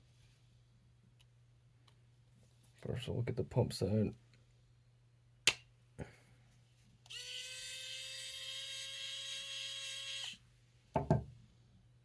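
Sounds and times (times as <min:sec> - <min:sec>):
electric driver motor whining: 0:07.1 - 0:10.4.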